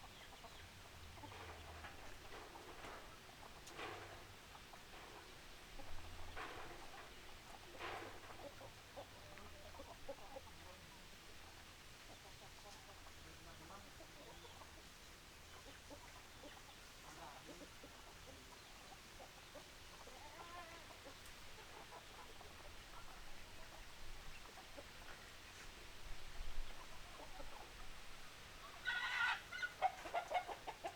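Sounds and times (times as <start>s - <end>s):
chickens clucking softly: 0.0s - 30.9s
loud high chicken call: 28.8s - 30.0s.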